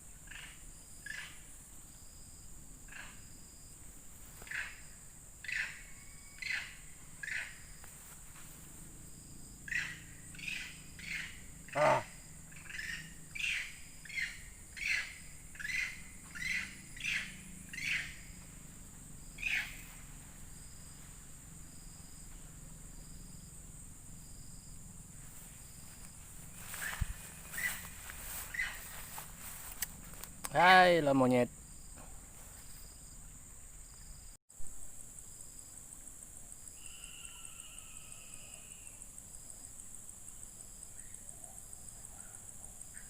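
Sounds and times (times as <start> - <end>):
high insect drone: 0.0 - 43.0
sharp animal calls: 5.4 - 7.6, 9.6 - 18.4, 19.4 - 20.0, 26.5 - 29.2.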